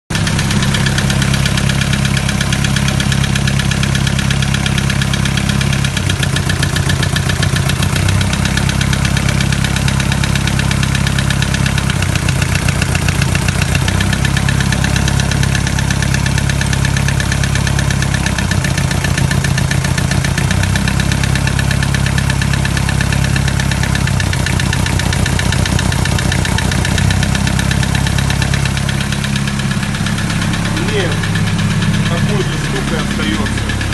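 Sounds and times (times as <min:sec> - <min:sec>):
diesel engine idling: 0:00.1 - 0:33.9
rhythmic knock inside engine: 0:00.1 - 0:33.9.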